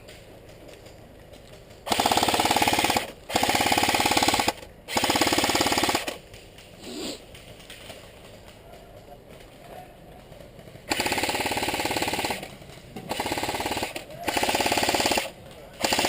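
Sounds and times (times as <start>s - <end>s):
airsoft rifle firing bursts: 1.8s - 6.3s, 10.2s - 16.0s.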